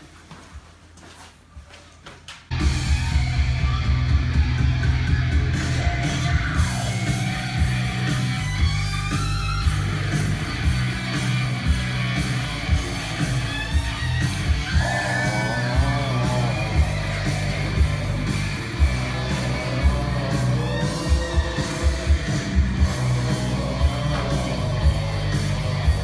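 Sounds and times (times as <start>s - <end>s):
rock music: 2.5s - 26.0s
shouted vocal: 5.4s - 7.2s, 13.9s - 26.0s.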